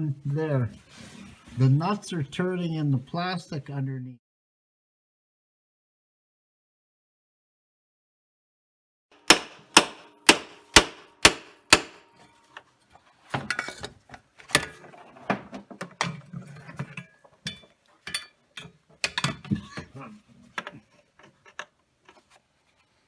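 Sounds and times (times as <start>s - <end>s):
hard objects knocking and clattering: 13.3s - 22.3s.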